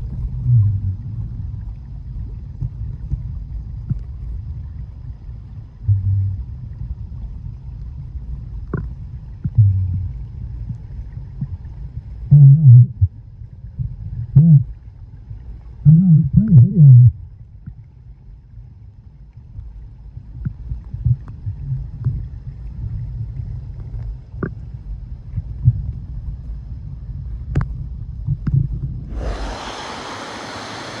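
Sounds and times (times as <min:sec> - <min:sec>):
underwater rumble of falling water: 0:00.0 - 0:31.0
bright hiss of falling water: 0:29.1 - 0:31.0.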